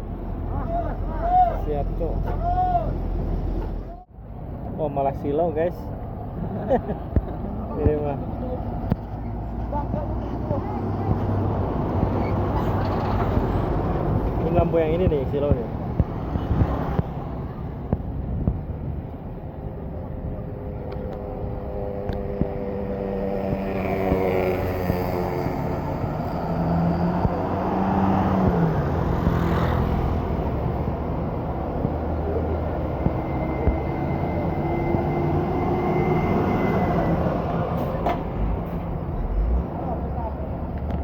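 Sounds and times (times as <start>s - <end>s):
bus engine rumbling: 0.0s - 41.0s
large vehicle passing: 20.4s - 40.8s.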